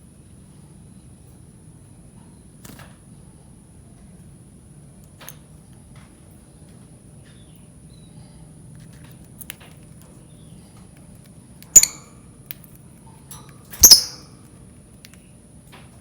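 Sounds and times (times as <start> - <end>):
lovebird shrill calls: 11.8 - 12.1, 13.8 - 14.3.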